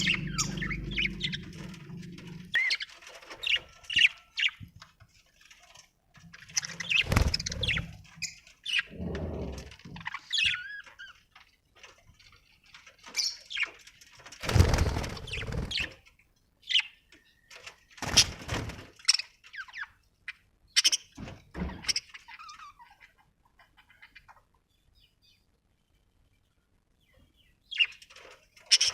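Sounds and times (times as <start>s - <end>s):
budgerigars chirping: 0.0s - 1.6s.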